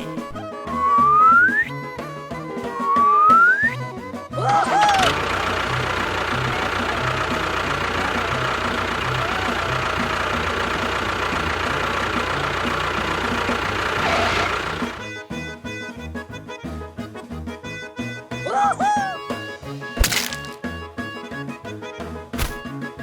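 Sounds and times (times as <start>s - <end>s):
small motor whining: 12.4s - 15.0s.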